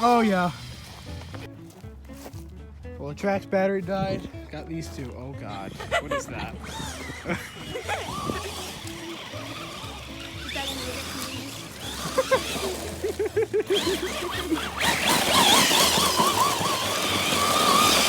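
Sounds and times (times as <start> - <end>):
rc car electric motors whining: 0.0 - 1.5, 5.6 - 18.0
tire noise: 0.0 - 18.0.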